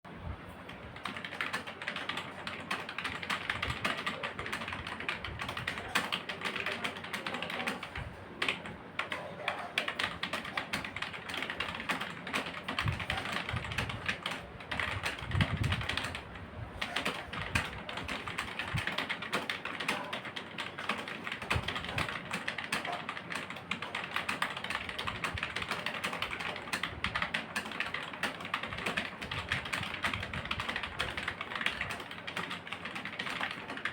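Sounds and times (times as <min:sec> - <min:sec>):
fast typing on keyboard: 0:00.7 - 0:33.9.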